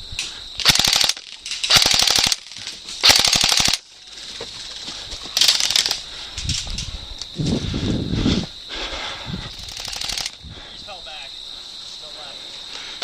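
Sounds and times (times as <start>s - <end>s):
airsoft rifle firing bursts: 0.6s - 3.8s, 9.7s - 10.4s.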